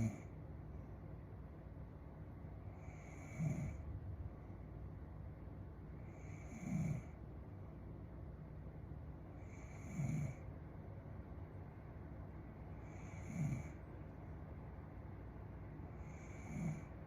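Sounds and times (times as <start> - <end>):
woman snoring: 0.0 - 0.2, 2.8 - 3.8, 6.2 - 7.1, 9.5 - 10.4, 12.9 - 13.8, 16.0 - 16.9.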